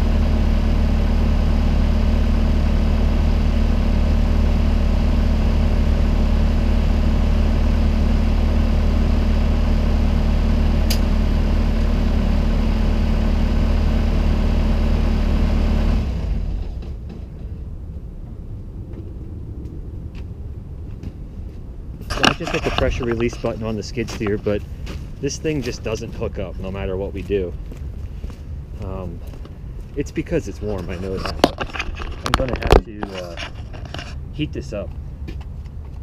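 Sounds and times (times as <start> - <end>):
diesel engine idling: 0.0 - 19.4.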